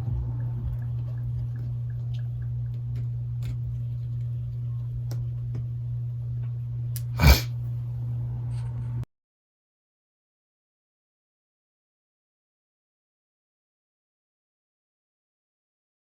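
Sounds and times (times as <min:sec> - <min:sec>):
steady low hum: 0:00.0 - 0:09.1.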